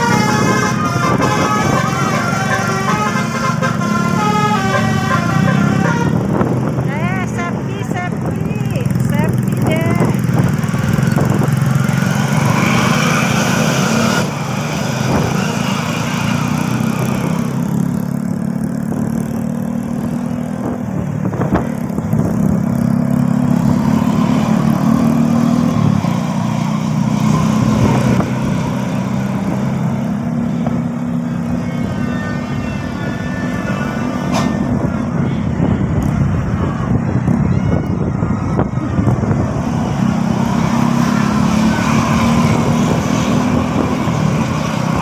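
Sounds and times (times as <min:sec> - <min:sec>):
vehicle engine running: 0:04.3 - 0:12.1.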